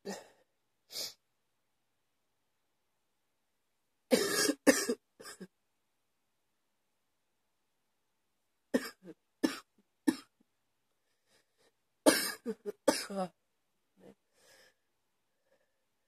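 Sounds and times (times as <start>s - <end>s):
woman coughing: 4.1s - 5.5s, 8.8s - 10.3s, 12.1s - 13.3s.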